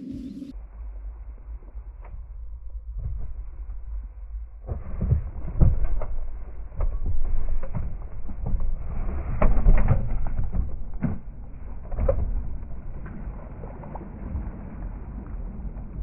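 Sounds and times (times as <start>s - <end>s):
low rumble: 0.0s - 16.0s
knocks and thumps on boat: 4.6s - 13.2s.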